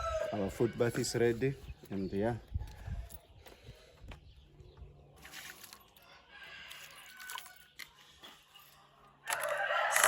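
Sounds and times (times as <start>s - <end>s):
rooster crowing loudly: 0.0s - 0.5s, 9.4s - 10.0s.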